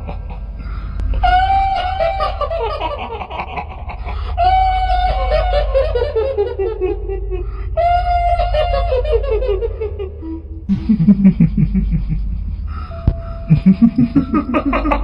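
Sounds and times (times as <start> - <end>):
low droning hum: 0.0 - 15.0
woman cackling laugh: 10.7 - 12.5, 13.5 - 15.0.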